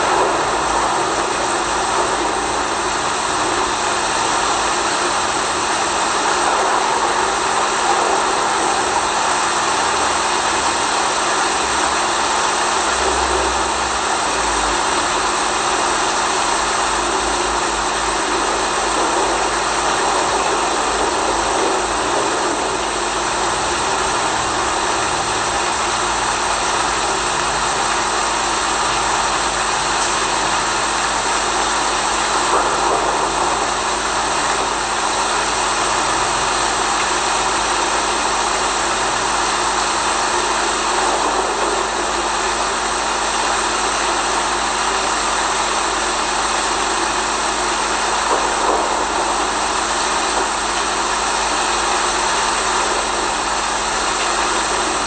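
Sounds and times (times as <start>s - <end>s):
steady rushing noise: 0.0s - 28.9s, 29.7s - 45.1s, 47.0s - 55.0s
constant low hum: 12.4s - 24.1s.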